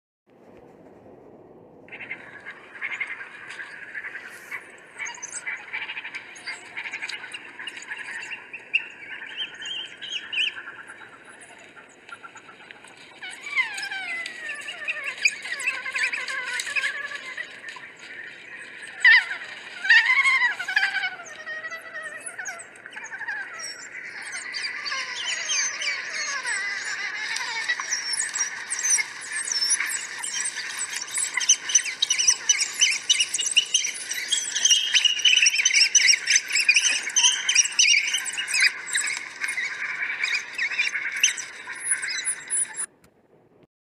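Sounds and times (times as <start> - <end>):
wild dogs twittering: 1.9 - 12.6, 13.2 - 42.9
wild dogs whining: 18.8 - 42.9.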